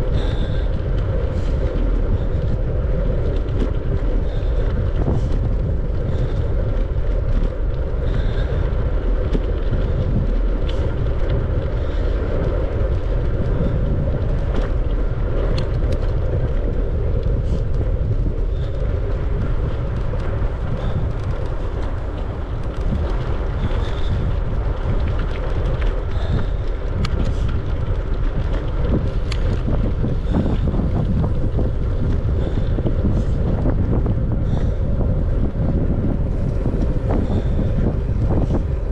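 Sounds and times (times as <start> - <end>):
wind noise on microphone: 0.0 - 38.9.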